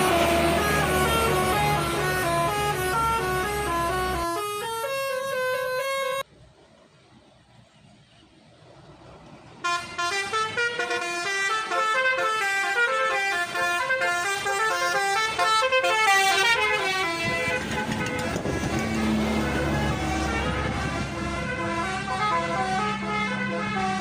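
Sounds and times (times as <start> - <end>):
multi-tone bus horn melody: 0.0 - 6.2, 9.6 - 24.0.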